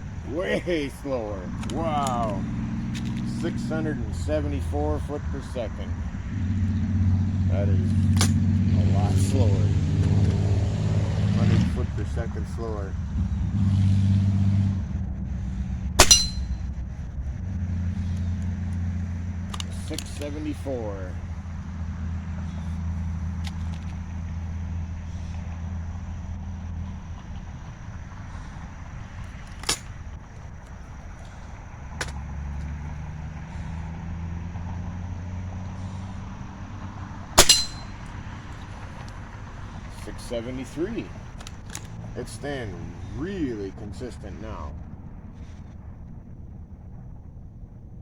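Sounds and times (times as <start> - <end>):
steady low hum: 0.0 - 48.0
gun handling clicks: 1.6 - 3.4, 8.0 - 8.4, 19.5 - 20.5, 29.4 - 30.0, 41.4 - 42.0
air rifle shot: 16.0 - 16.5, 37.4 - 38.0.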